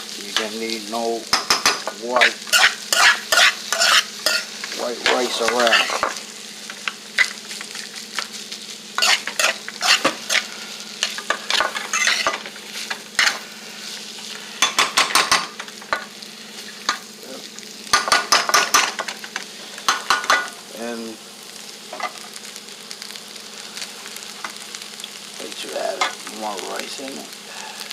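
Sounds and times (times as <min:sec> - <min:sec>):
rice sizzling: 0:00.0 - 0:27.9
utensil scraping a pan: 0:02.2 - 0:04.5, 0:05.1 - 0:06.1, 0:09.0 - 0:10.5, 0:11.1 - 0:12.4.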